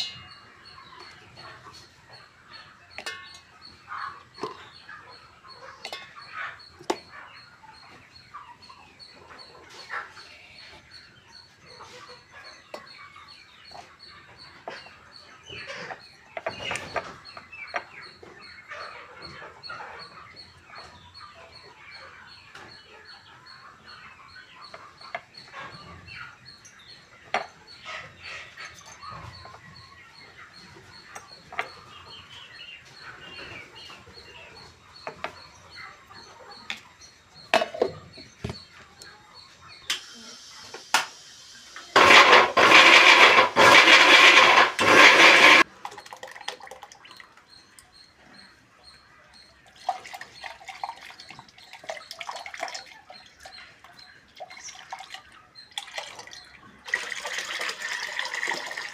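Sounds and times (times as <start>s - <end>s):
chickens squawking: 0.0s - 40.8s, 41.5s - 45.7s
chickens clucking: 0.0s - 58.9s.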